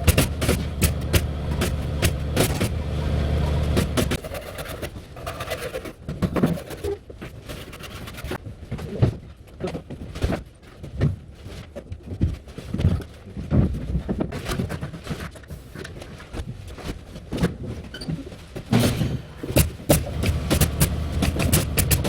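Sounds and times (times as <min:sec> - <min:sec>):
knocks and thuds of carpentry: 0:18.7 - 0:22.0
sharp clicks: 0:19.6 - 0:22.0.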